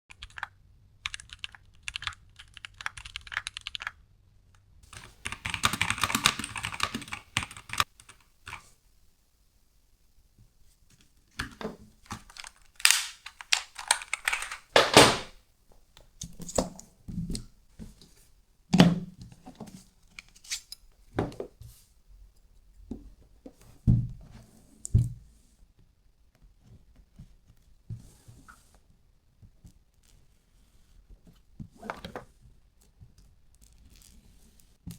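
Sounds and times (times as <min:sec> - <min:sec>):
keyboard clicks: 0:01.1 - 0:04.0, 0:04.9 - 0:08.6, 0:12.1 - 0:15.3
packaging rustling and tearing: 0:12.1 - 0:15.3.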